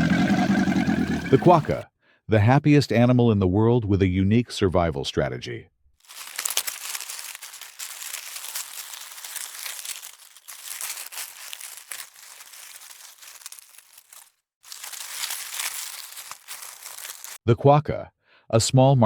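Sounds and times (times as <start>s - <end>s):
dense crackling and rustling: 0.0s - 1.8s, 6.0s - 17.4s.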